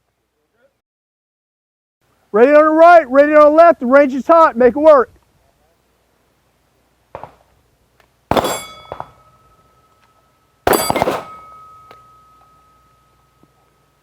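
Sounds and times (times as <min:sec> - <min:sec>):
pistol shots: 0:08.3 - 0:09.2, 0:10.7 - 0:11.7
long metallic ring: 0:08.3 - 0:14.0.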